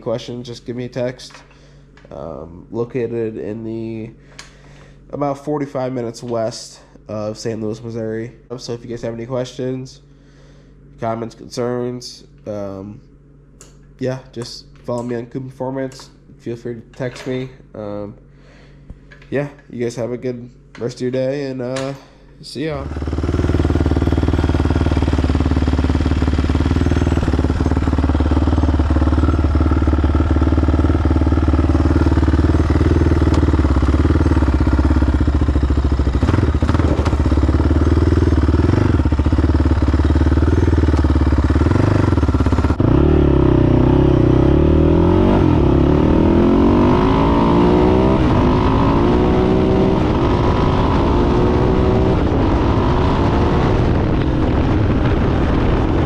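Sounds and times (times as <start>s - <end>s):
engine revving up and down: 22.7s - 56.0s
engine running steadily: 22.7s - 56.0s.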